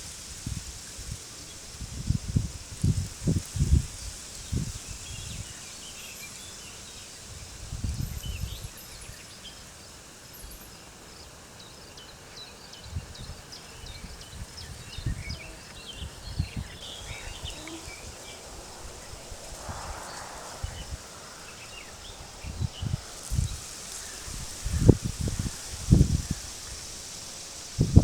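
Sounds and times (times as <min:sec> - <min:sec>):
wind gusting: 0:00.0 - 0:06.0, 0:12.9 - 0:28.0
steady high hiss: 0:00.0 - 0:28.0
small birds chirping: 0:02.8 - 0:28.0.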